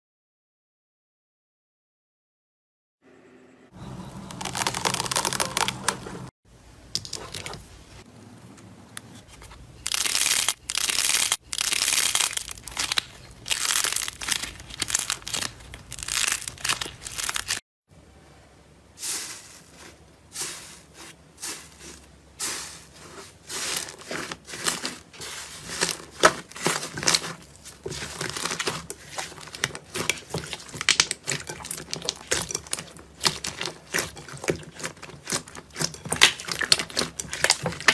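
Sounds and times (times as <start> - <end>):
slime crackling and popping: 4.3 - 5.9, 9.9 - 17.6, 23.6 - 37.9.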